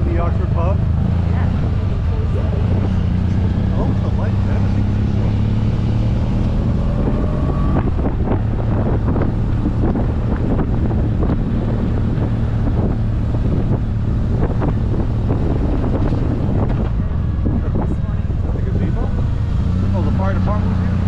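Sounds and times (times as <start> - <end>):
motorcycle engine running: 0.0 - 21.0
wind noise on microphone: 0.0 - 21.0.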